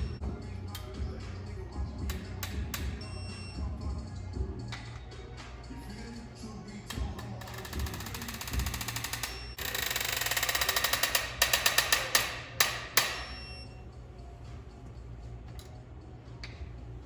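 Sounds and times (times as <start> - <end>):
ratchet wrench clicking: 2.0 - 3.2, 6.9 - 13.6.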